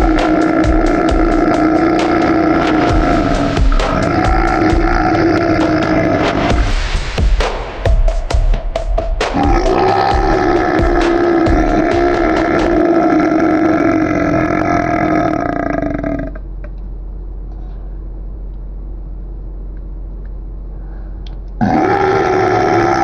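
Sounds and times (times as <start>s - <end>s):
buzzy droning tone: 0.0s - 15.3s
faint low hum: 15.6s - 21.6s.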